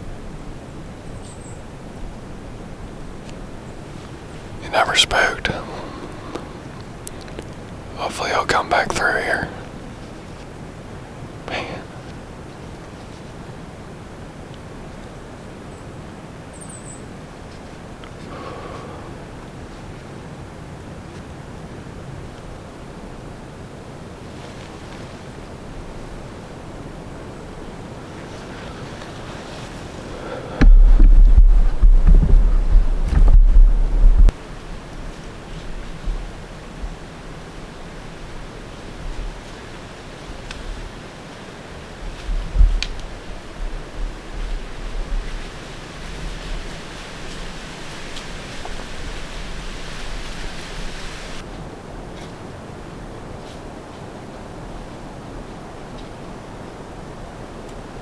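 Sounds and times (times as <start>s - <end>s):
steady wind rushing: 25.5s - 34.4s, 42.0s - 51.4s
wind rushing hiss: 45.1s - 51.4s.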